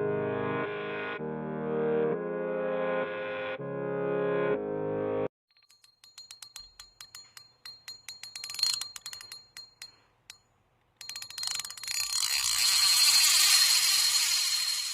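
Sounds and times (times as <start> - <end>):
metallic ratchet clicking: 5.5 - 14.9.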